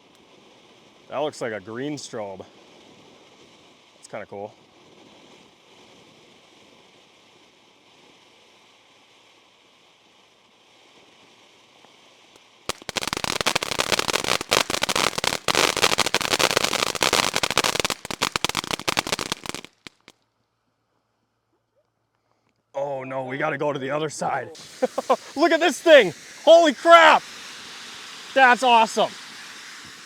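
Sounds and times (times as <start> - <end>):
firework fountain hissing: 0.0 - 20.1, 22.8 - 30.0
rapid crackling pops: 11.8 - 20.2, 23.4 - 30.0.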